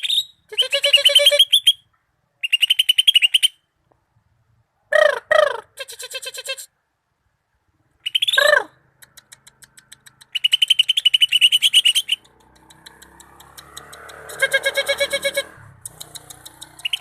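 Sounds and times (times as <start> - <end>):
leafbird singing fast trills: 9.5 - 15.2, 15.8 - 17.0.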